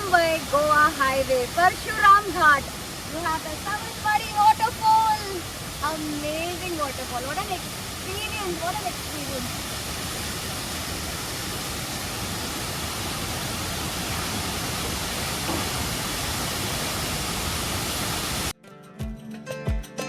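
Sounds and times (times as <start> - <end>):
waterfall roaring: 0.0 - 18.5
plucked string music with beat: 18.6 - 20.0.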